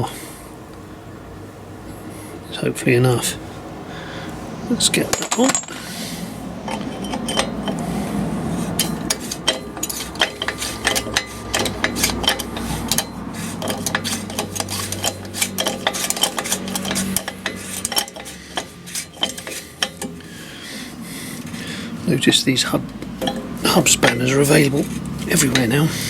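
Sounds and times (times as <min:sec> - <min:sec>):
metal tools clinking and scraping: 0:04.8 - 0:21.8, 0:22.6 - 0:26.0.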